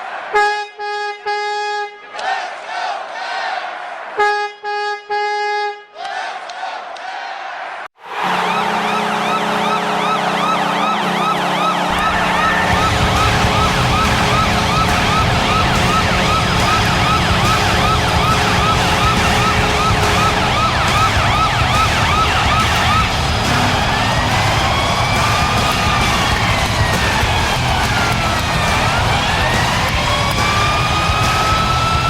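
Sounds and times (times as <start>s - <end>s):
low goal horn tone: 0.4s - 2.1s, 4.2s - 5.9s, 8.1s - 30.7s
rising wail: 8.0s - 32.0s
yelping siren: 8.0s - 32.0s.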